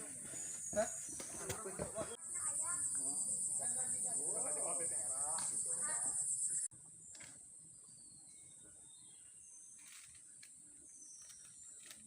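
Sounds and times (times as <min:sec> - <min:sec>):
insects buzzing: 0:00.6 - 0:06.7.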